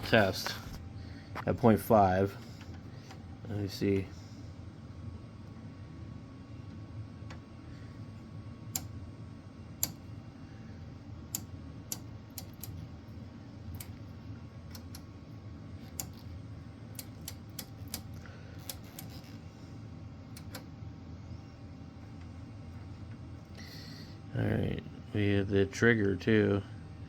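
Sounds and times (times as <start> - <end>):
low steady hum: 0.0 - 27.0
rotary switch knobs clicking: 8.7 - 8.9, 9.8 - 10.0, 11.3 - 12.8, 13.7 - 14.0, 14.6 - 15.1, 15.8 - 16.3, 16.9 - 19.4, 20.3 - 20.7.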